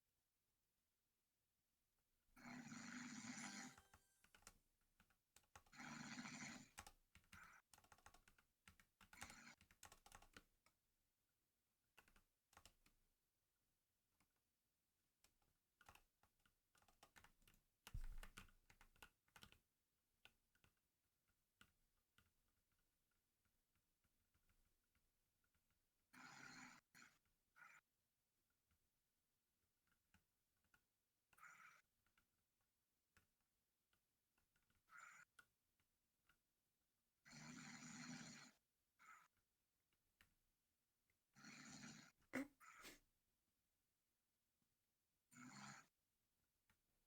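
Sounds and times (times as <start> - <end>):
quiet snoring: 2.4 - 3.9, 5.7 - 6.9, 26.2 - 27.8, 37.3 - 39.3, 41.4 - 43.0, 45.4 - 45.9
faint clicks and ticks: 3.3 - 10.8, 12.0 - 13.0, 15.2 - 19.6.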